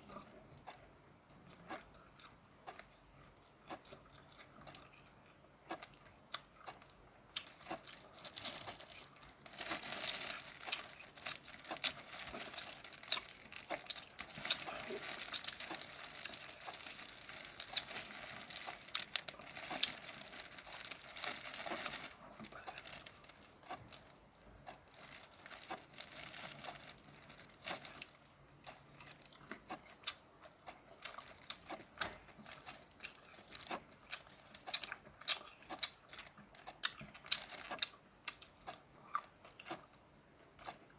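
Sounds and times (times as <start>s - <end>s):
shrimp shells crackling: 7.4s - 29.5s.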